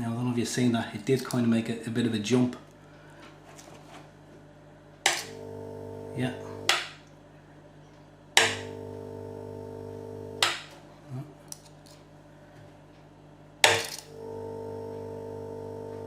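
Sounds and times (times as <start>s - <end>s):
transformer buzzing: 5.1s - 6.8s, 8.4s - 10.5s, 13.7s - 16.0s
electric motor straining: 8.4s - 10.4s.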